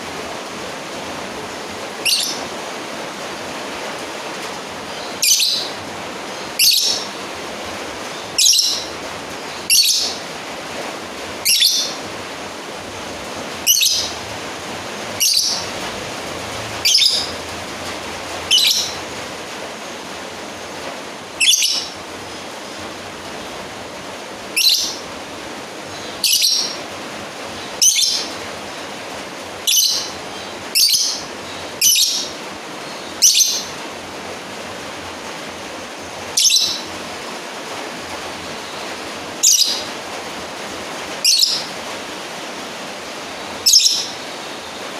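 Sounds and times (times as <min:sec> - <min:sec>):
steady hiss: 0:00.0 - 0:44.9
lovebird high-pitched calls: 0:02.0 - 0:02.5, 0:04.8 - 0:07.2, 0:08.1 - 0:10.2, 0:11.4 - 0:12.1, 0:13.6 - 0:14.2, 0:15.1 - 0:15.8, 0:16.8 - 0:17.4, 0:18.4 - 0:19.1, 0:21.3 - 0:22.5, 0:24.5 - 0:25.1, 0:25.9 - 0:26.9, 0:27.6 - 0:28.4, 0:29.6 - 0:33.8, 0:36.0 - 0:36.9, 0:38.6 - 0:39.9, 0:41.2 - 0:41.8, 0:43.4 - 0:44.8.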